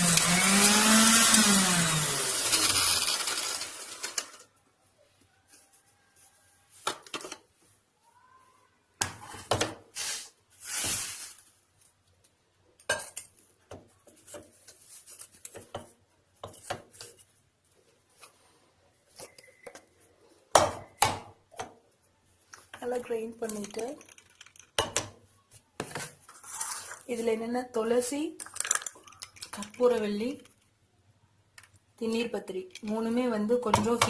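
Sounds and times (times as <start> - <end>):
mixer grinder motor winding down: 0.0 - 4.4.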